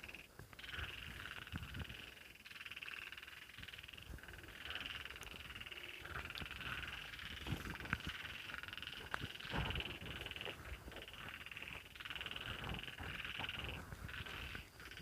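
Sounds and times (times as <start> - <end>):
frogs croaking: 0.0 - 15.0.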